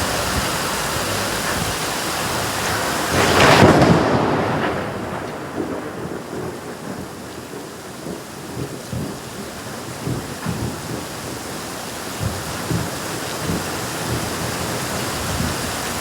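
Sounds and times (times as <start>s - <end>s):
thunder rumbling: 0.0s - 11.6s
steady rain hiss: 0.0s - 16.0s.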